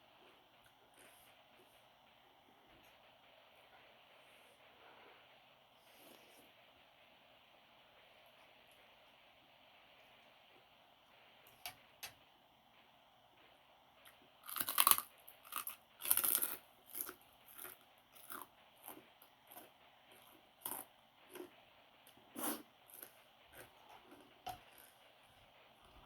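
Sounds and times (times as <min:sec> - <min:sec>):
crunchy food biting and chewing: 0:14.0 - 0:25.0.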